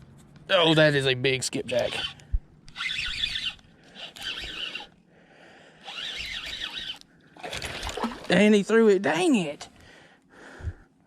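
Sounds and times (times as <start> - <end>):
fishing reel whirring: 1.7 - 5.0, 5.8 - 8.0.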